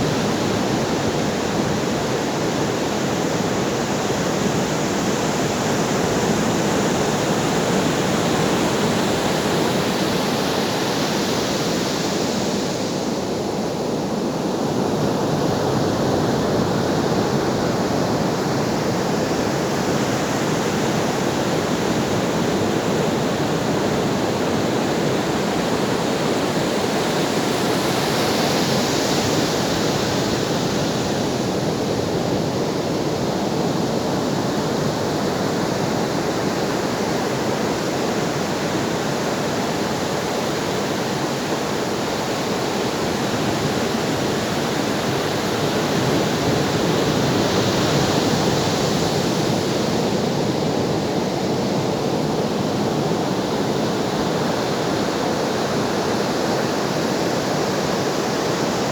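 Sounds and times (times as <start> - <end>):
ocean waves washing onto shore: 0.0 - 58.9.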